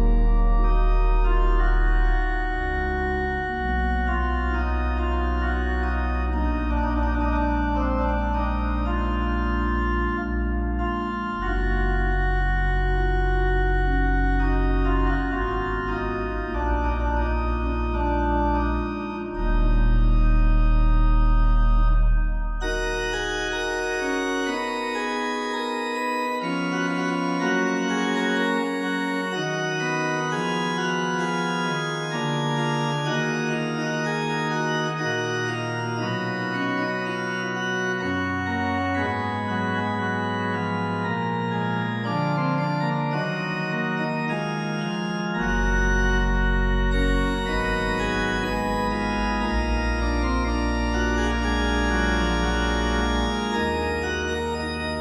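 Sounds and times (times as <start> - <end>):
sustained organ chords: 0.0 - 55.0
deep bass note: 19.0 - 23.4.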